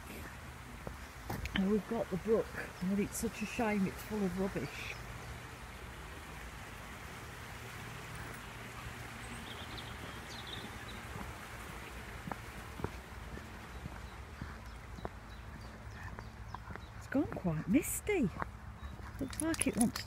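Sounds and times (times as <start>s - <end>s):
brook babbling: 0.0s - 20.0s.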